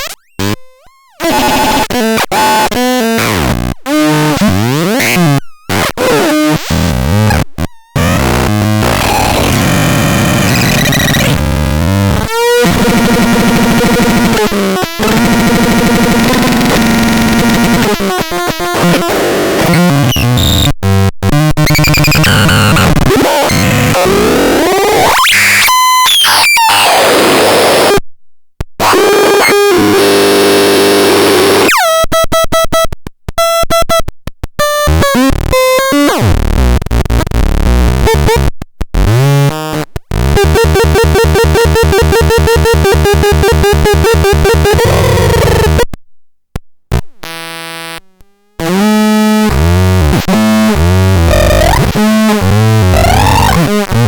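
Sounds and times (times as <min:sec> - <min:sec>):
harsh buzzing synthesized tones: 0:08.0 - 0:20.7, 0:34.6 - 0:45.9, 0:46.9 - 0:54.0.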